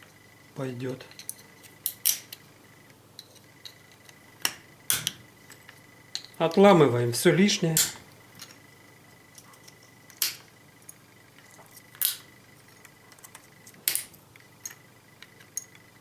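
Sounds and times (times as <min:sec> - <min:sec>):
plastic snapping: 0:01.2 - 0:02.4, 0:10.1 - 0:10.4, 0:12.0 - 0:12.3, 0:13.2 - 0:14.8.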